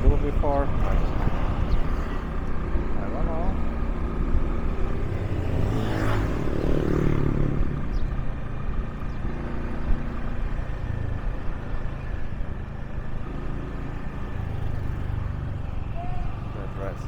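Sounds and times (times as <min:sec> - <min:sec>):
vehicle engine running: 0:00.0 - 0:05.8
vehicle passing by: 0:00.0 - 0:10.8
road and wind noise: 0:00.0 - 0:17.0.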